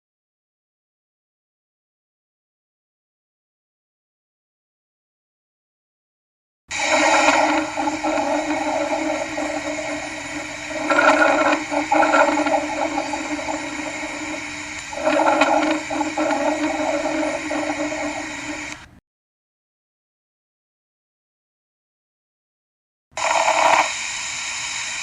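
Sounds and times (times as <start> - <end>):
noisy abnormal breathing: 6.7 - 18.9, 23.2 - 25.0.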